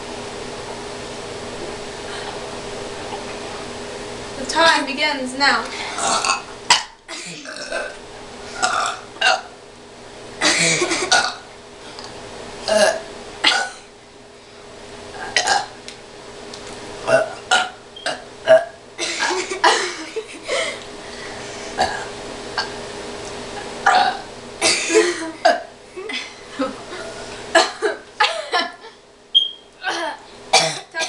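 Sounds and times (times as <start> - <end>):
people burping: 5.9 - 8.0, 8.6 - 9.5, 10.4 - 11.5, 12.6 - 13.9, 15.2 - 15.8, 17.0 - 20.8, 21.8 - 22.8, 23.8 - 26.8, 29.8 - 31.0.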